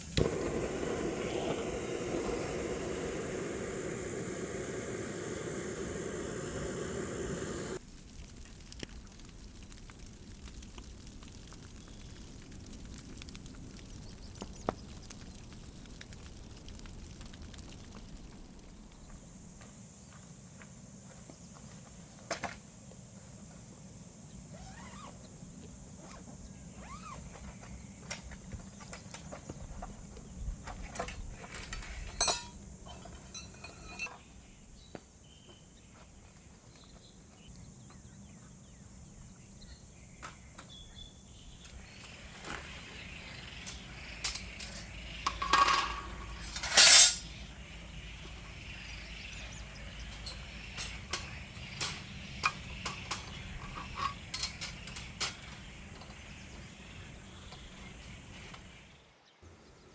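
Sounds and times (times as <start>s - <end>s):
metal cooking gear clinking: 31.7s - 34.1s.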